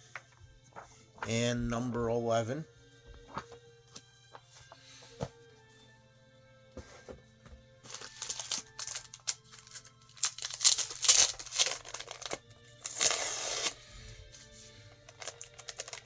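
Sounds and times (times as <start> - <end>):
plastic packaging crinkling: 7.9 - 13.8, 14.9 - 16.0.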